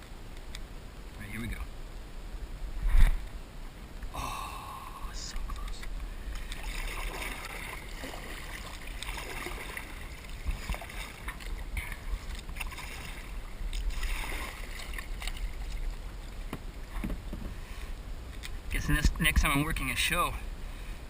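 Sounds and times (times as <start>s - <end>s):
water splashing around kayak: 0.0s - 21.0s
wind rumble on microphone: 2.2s - 3.9s, 5.1s - 17.6s
light knocks on kayak: 16.5s - 17.6s.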